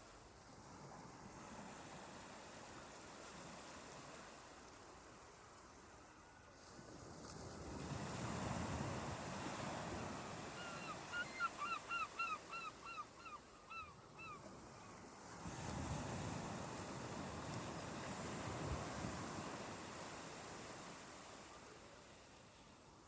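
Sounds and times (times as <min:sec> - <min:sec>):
surf washing in: 0:15.4 - 0:22.8.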